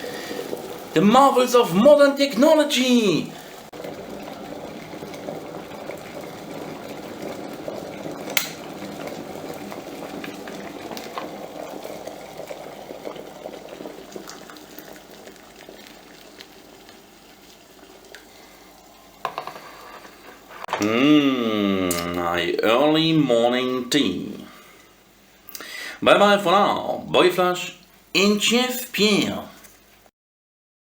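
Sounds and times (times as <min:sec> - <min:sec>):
kettle water boiling: 0:00.0 - 0:30.1
kettle switch click: 0:08.3 - 0:08.6.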